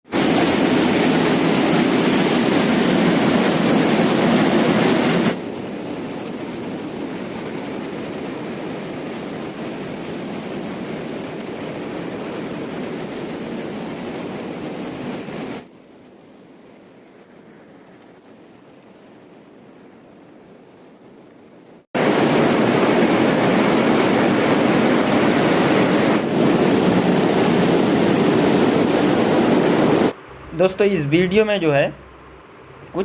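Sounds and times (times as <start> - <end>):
loud steady rushing noise: 0.1 - 15.7, 22.0 - 33.0.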